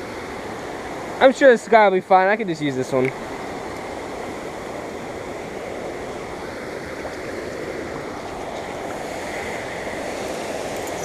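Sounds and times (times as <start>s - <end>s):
creek water flowing: 0.0s - 11.0s.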